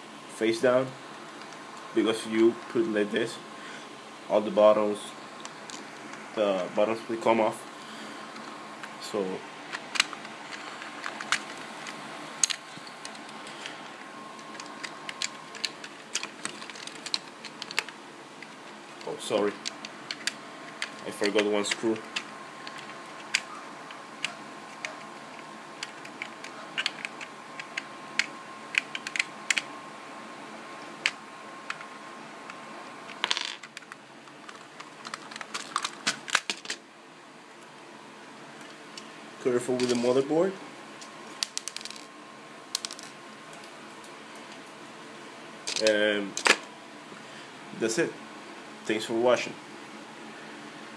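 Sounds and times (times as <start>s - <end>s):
plastic controller clicking and clattering: 33.6s - 36.8s.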